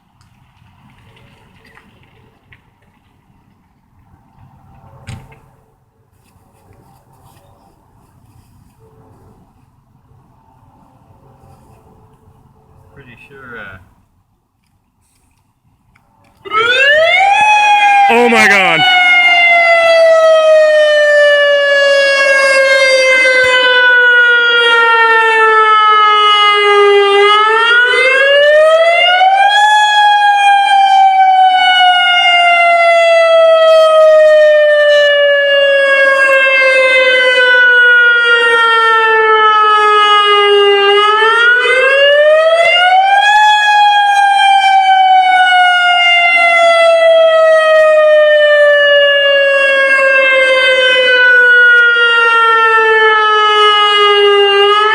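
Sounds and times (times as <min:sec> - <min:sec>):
warning siren wailing: 0:16.4 - 0:54.9.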